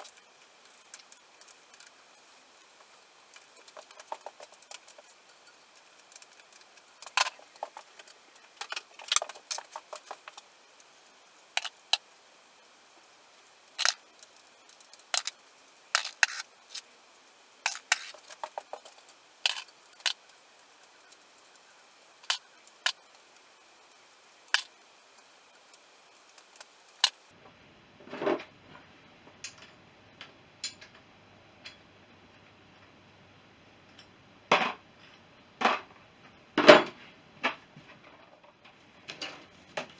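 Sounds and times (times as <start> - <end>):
metal scrape: 16.0 - 16.8, 17.7 - 20.2.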